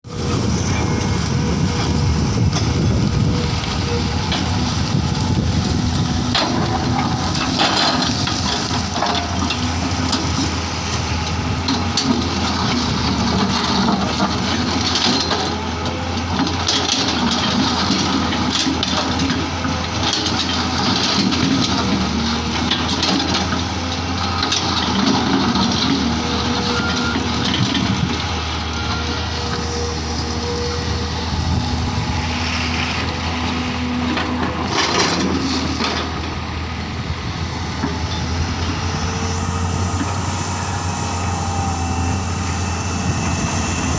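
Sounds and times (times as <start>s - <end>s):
diesel engine running: 0.0s - 43.9s
soil and stones crunching: 0.1s - 43.9s.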